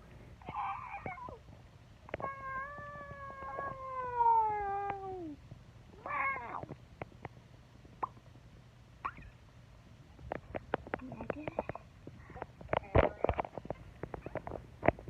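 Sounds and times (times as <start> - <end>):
cat meowing: 2.1 - 5.4, 6.0 - 6.7.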